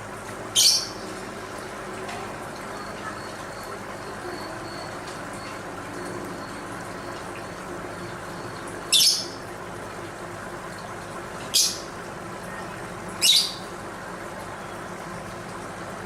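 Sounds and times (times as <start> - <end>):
lovebird squawking: 0.6 - 1.0, 8.9 - 9.4, 13.2 - 13.6.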